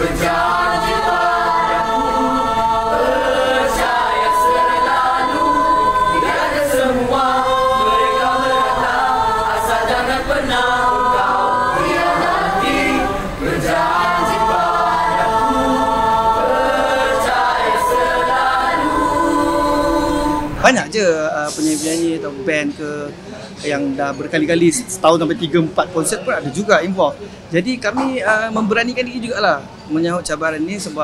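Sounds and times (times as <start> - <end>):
music: 0.0 - 20.7
people singing: 0.0 - 20.8.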